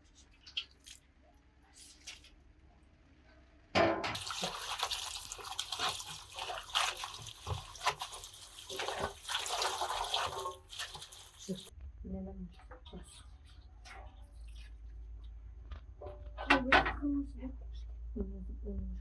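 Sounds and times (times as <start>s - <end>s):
water pouring and splashing: 0.4s - 1.0s, 4.2s - 11.7s.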